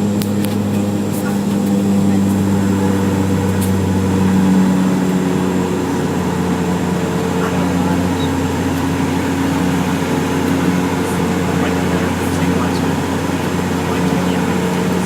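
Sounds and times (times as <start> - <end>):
airliner cabin engine drone: 0.0 - 15.0.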